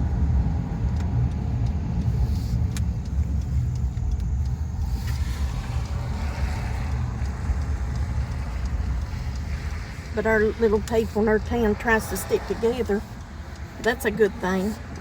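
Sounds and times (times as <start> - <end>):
car engine and road rumble: 0.0 - 15.0.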